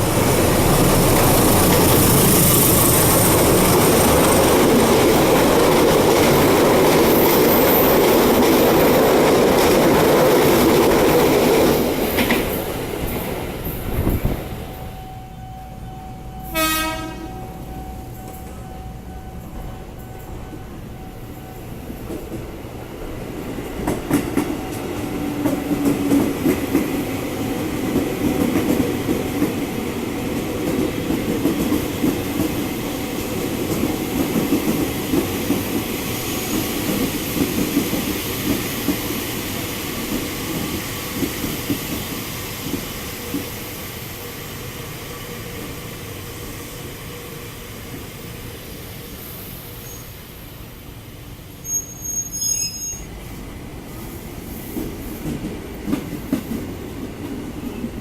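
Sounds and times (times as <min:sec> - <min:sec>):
train wheels clattering: 0:54.3 - 0:58.0.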